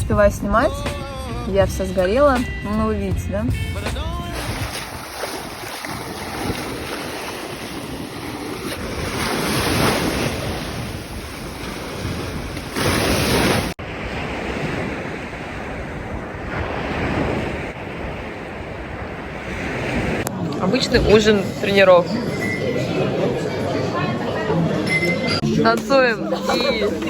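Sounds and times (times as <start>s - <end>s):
sea surf washing ashore: 3.9s - 27.0s
wind buffeting microphone: 4.3s - 24.8s.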